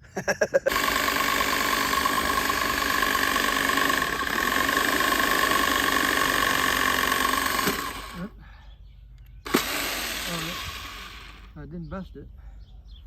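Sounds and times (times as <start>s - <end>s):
engine running: 0.7s - 8.4s, 9.4s - 11.6s.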